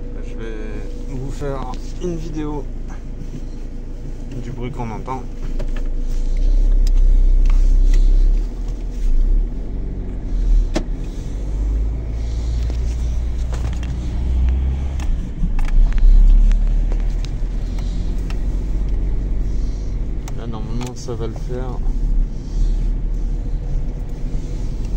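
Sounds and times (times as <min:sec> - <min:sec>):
car road noise rumble: 0:00.0 - 0:24.9.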